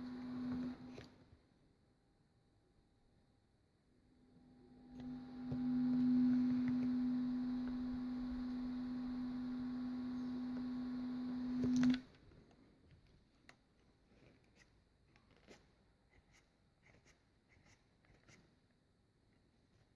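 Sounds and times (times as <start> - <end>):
soldering gun humming: 0.0 - 1.1, 4.3 - 12.1.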